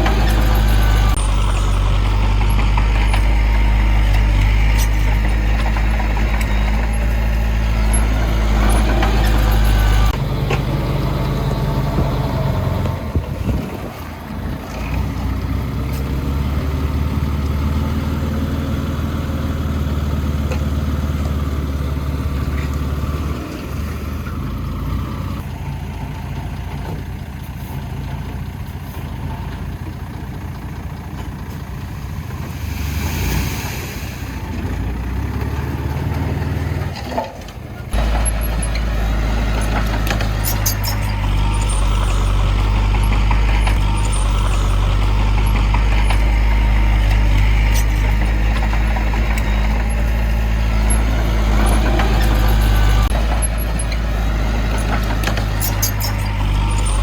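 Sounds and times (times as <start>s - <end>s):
diesel engine droning: 0.0s - 57.0s
short hiss: 32.5s - 34.5s.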